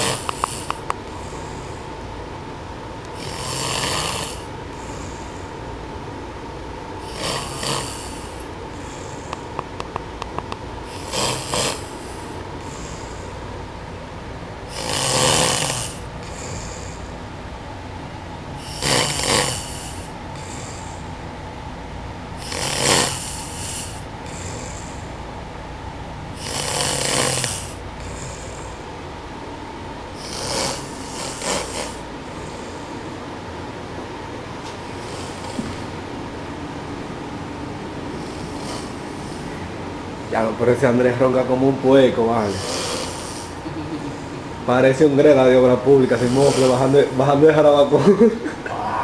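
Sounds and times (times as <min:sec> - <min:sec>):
man snoring: 0:00.0 - 0:01.8, 0:03.1 - 0:05.4, 0:07.0 - 0:09.4, 0:10.9 - 0:13.3, 0:14.7 - 0:17.1, 0:18.6 - 0:21.0, 0:22.4 - 0:25.1, 0:26.3 - 0:28.8, 0:30.2 - 0:33.0, 0:34.9 - 0:35.8, 0:38.2 - 0:39.5, 0:42.4 - 0:44.1, 0:46.0 - 0:47.3.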